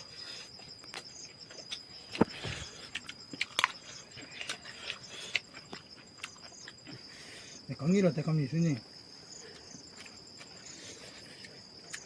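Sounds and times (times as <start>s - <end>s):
crickets droning: 0.0s - 12.0s.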